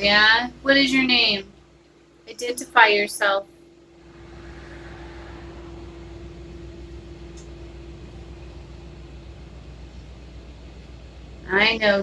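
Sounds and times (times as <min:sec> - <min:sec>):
machine hum and hiss: 0:00.0 - 0:12.0
steady mid-pitched tone: 0:03.9 - 0:12.0.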